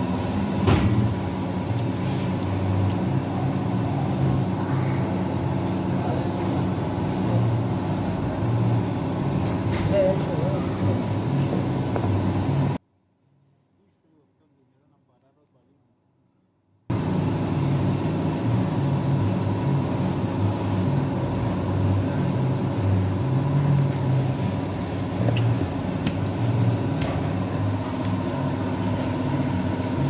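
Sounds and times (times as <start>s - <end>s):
car engine running: 0.0s - 12.8s, 16.9s - 30.0s
steady whining tone: 16.9s - 30.0s.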